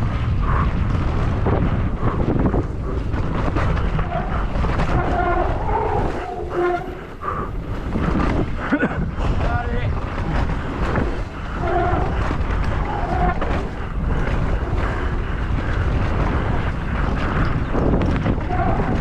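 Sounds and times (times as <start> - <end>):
bike rattles and knocks: 0.0 - 19.0
wind buffeting microphone: 0.0 - 19.0.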